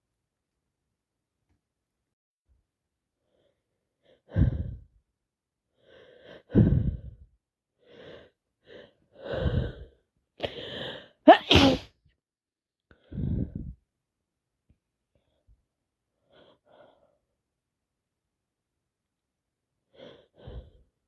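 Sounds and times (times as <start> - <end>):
gasping in-breaths: 3.4 - 4.9, 5.8 - 11.2, 12.9 - 13.8, 19.9 - 20.9
person sneezing: 11.3 - 11.9.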